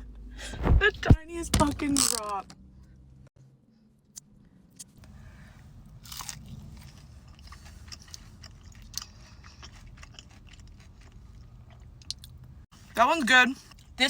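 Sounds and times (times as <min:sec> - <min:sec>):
chewing crispy food: 0:06.0 - 0:12.5.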